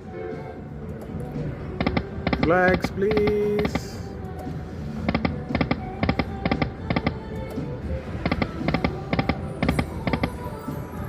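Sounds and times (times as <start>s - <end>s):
electronic slot machine music: 0.2s - 11.0s
sharp clicks: 1.8s - 7.6s, 8.2s - 10.5s.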